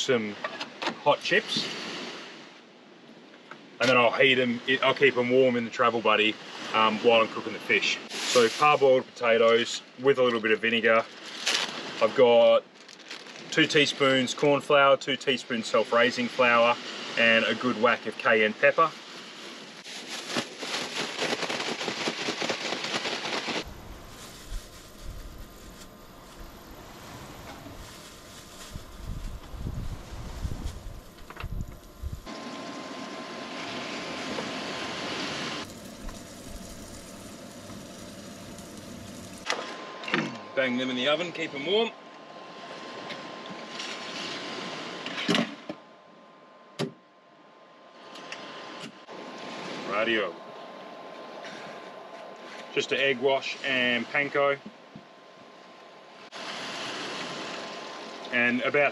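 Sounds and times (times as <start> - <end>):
steady hiss: 3.9 - 11.3, 13.5 - 39.6
low rumble: 23.6 - 32.3
potatoes sizzling in hot oil: 35.6 - 39.4.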